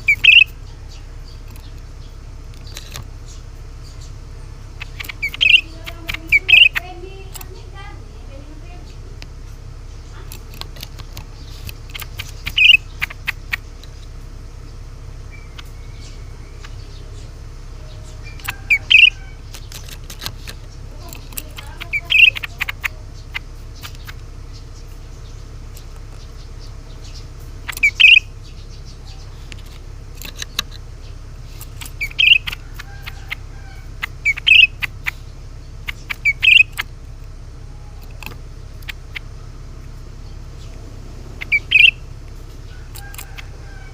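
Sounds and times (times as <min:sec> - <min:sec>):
bird calling in short bursts: 0:00.0 - 0:00.6, 0:04.8 - 0:07.0, 0:11.5 - 0:13.6, 0:18.0 - 0:19.6, 0:20.9 - 0:24.2, 0:27.6 - 0:29.5, 0:31.8 - 0:37.0, 0:41.4 - 0:43.9
steady low hum: 0:00.0 - 0:43.9.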